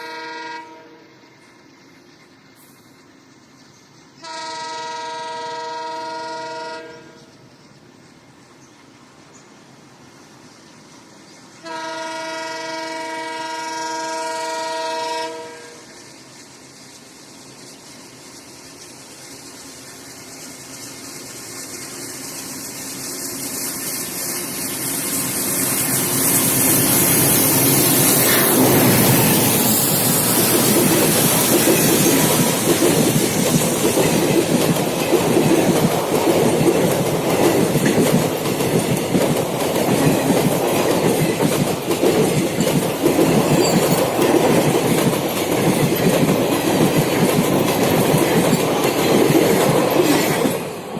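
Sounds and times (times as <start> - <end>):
locomotive horn blast: 0.0 - 1.0, 4.2 - 7.3, 11.6 - 15.9
diesel locomotive engine: 0.0 - 50.9
train passing loudly: 0.0 - 50.9.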